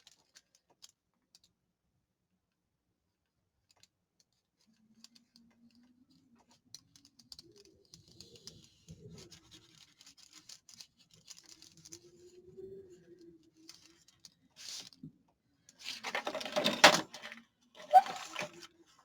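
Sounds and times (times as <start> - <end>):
paper rustling and rubbing: 15.8 - 18.7.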